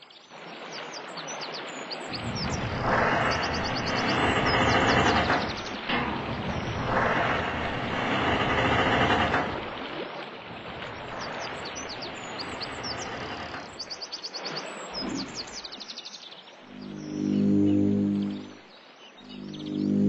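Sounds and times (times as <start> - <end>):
birds chirping: 1.0 - 20.0
steady background noise: 2.1 - 14.0, 16.7 - 20.0.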